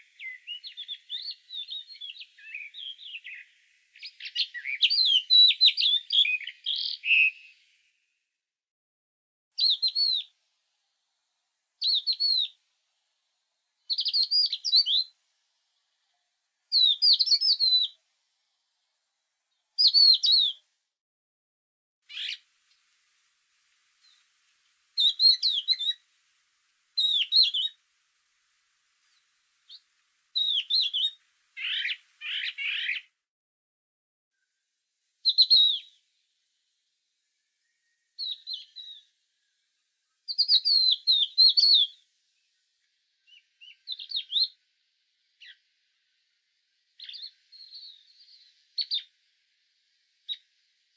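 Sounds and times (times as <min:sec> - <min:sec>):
songbird warbling: 0:00.0 - 0:07.6, 0:09.6 - 0:10.3, 0:11.8 - 0:12.6, 0:13.9 - 0:15.1, 0:16.7 - 0:18.0, 0:19.8 - 0:20.6, 0:22.1 - 0:22.4, 0:25.0 - 0:26.0, 0:27.0 - 0:27.8, 0:29.2 - 0:33.1, 0:35.2 - 0:35.9, 0:37.6 - 0:39.1, 0:40.3 - 0:41.9, 0:43.3 - 0:44.6, 0:45.4 - 0:45.6, 0:47.0 - 0:49.1.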